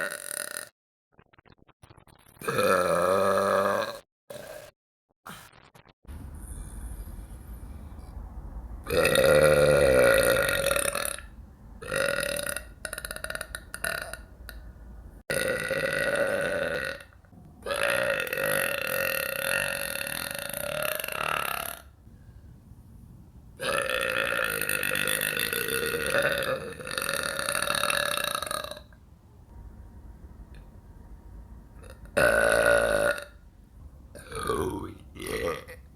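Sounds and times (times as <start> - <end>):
woman burping loudly: 0.0 - 0.7, 2.4 - 4.7, 8.9 - 14.3, 15.3 - 21.9, 23.6 - 29.0, 31.8 - 33.4, 34.2 - 35.9.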